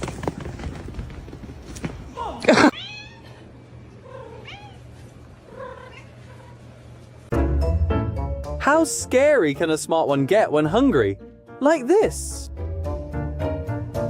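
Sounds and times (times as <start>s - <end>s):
cat meowing: 2.7s - 3.4s, 4.0s - 4.9s.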